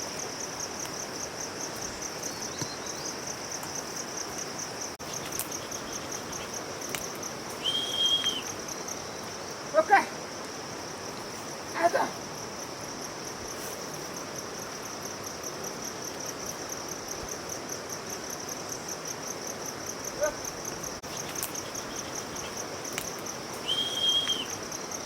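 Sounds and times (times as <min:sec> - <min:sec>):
insects chirring: 0:00.0 - 0:25.0
high whistle-like tone: 0:07.6 - 0:08.6, 0:23.6 - 0:24.6.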